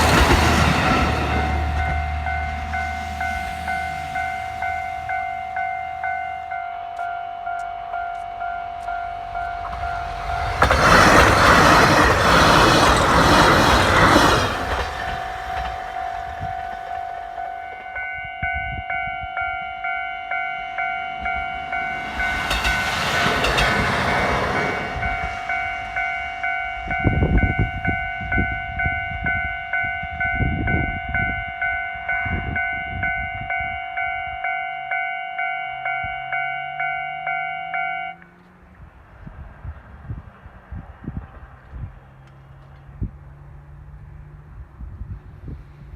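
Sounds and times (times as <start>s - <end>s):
diesel train passing: 0.0s - 45.9s
level-crossing bell ringing: 0.9s - 11.3s, 14.8s - 38.2s.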